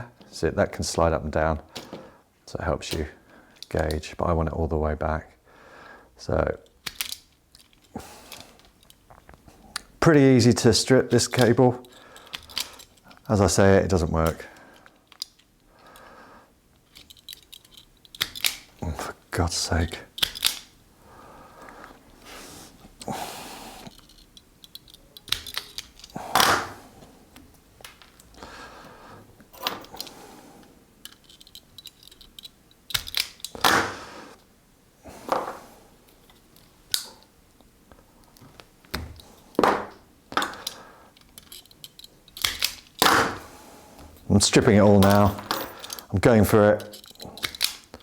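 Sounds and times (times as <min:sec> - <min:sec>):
wire strippers clicking: 0:16.7 - 0:18.8, 0:23.8 - 0:26.6, 0:40.3 - 0:43.2, 0:46.7 - 0:48.0.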